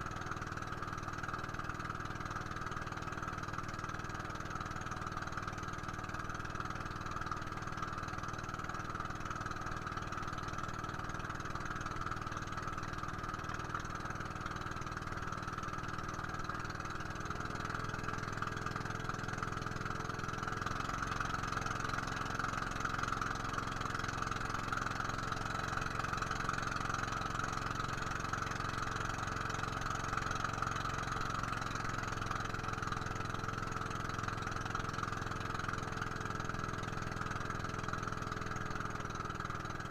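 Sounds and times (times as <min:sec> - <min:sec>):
boat engine running: 0:00.0 - 0:39.9.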